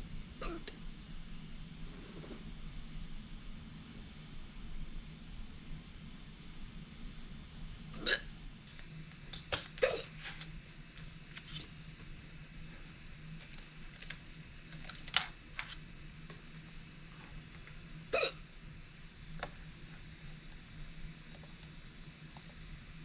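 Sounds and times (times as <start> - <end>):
person hiccuping: 0.4 - 0.8, 8.0 - 8.3, 9.8 - 10.1, 18.1 - 18.4.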